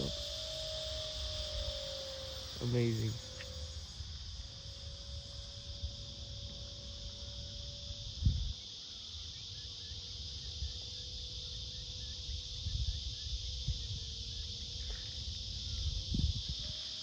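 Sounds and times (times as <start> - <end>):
faint electric fan whine: 0.0 - 8.6
wind buffeting microphone: 0.0 - 8.6, 12.3 - 16.7
shrill insect drone: 0.0 - 17.0.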